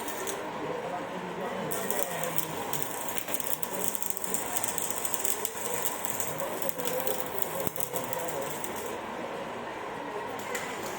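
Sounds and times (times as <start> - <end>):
arc welding crackling: 0.0 - 0.5, 1.6 - 9.0.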